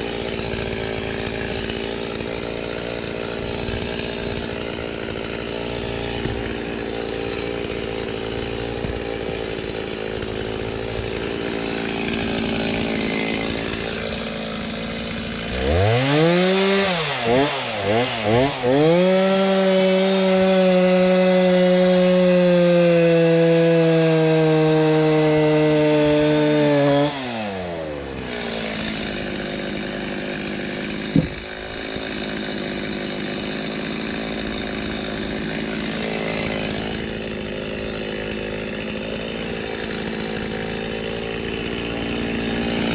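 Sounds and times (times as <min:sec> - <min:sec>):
chainsaw cutting log: 0:00.0 - 0:42.9
chainsaw engine: 0:00.0 - 0:42.9.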